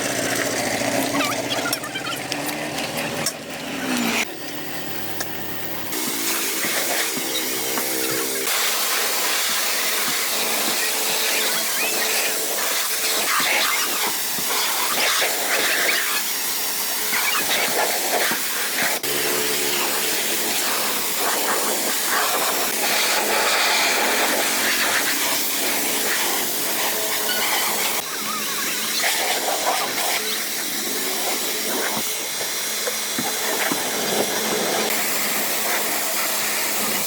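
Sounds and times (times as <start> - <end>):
high-pressure spray hissing: 4.2 - 37.0.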